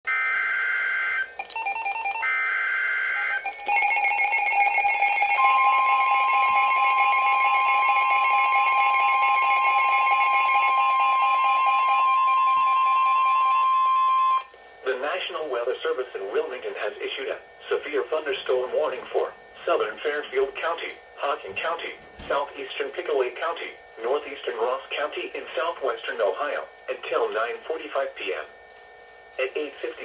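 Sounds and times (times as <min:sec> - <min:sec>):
steady single-pitched alarm tone: 0:00.1 - 0:14.6.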